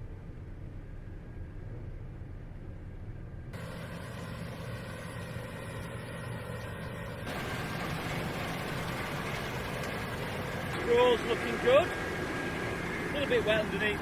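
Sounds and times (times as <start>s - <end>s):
combine harvester engine hum: 0.0s - 14.0s
rushing machine noise: 3.6s - 14.0s.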